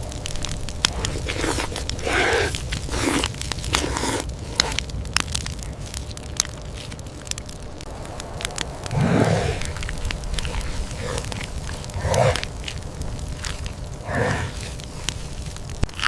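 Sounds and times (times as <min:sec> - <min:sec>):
animal biting and chewing: 0:00.0 - 0:07.2, 0:08.4 - 0:16.0
grunts: 0:14.0 - 0:14.8.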